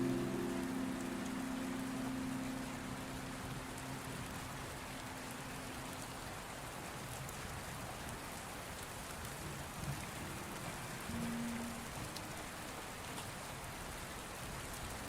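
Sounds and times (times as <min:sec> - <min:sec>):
faint low hum: 0:00.0 - 0:06.6
steady rain falling: 0:00.0 - 0:15.0.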